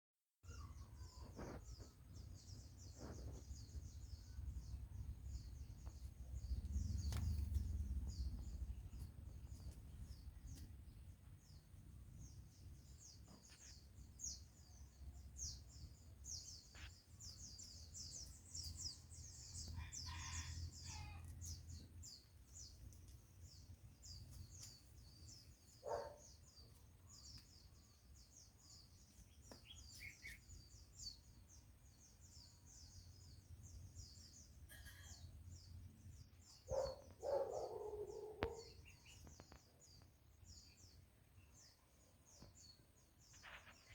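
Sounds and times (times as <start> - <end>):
small birds chirping: 0.4 - 43.9
low rumble: 4.5 - 10.4.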